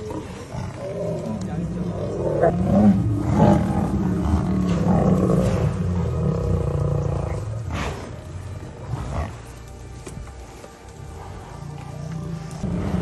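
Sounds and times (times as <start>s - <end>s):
lion growling and roaring: 0.0s - 9.8s, 11.0s - 13.0s.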